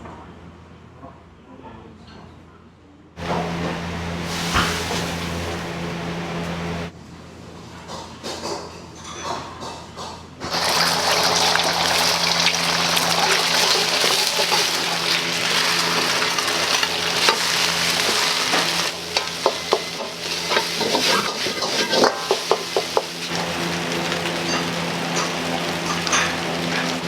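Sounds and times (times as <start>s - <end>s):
food sizzling in a wok: 3.9s - 5.8s, 10.5s - 27.0s
metal ladle clanking on wok: 17.2s - 23.2s.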